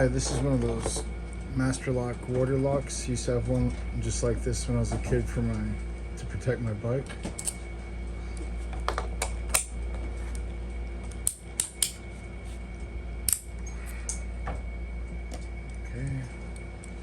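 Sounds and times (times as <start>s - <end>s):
padlock metal clicks: 11.2s - 12.0s, 13.3s - 13.5s.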